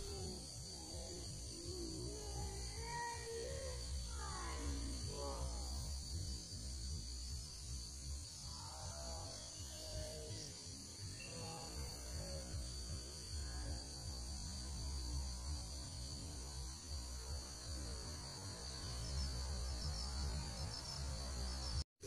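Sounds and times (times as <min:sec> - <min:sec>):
crickets chirping: 0:00.0 - 0:21.8.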